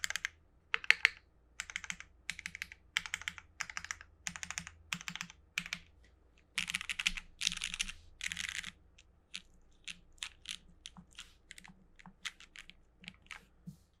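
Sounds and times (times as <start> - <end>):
typing on mechanical keyboard: 0.0 - 5.9, 6.5 - 13.5.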